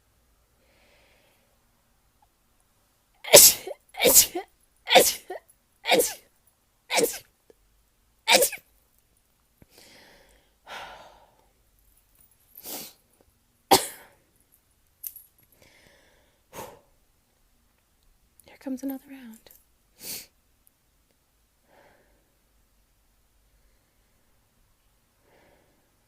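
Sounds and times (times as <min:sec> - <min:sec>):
woman sneezing: 0:03.2 - 0:06.2, 0:06.9 - 0:07.2, 0:08.3 - 0:08.6.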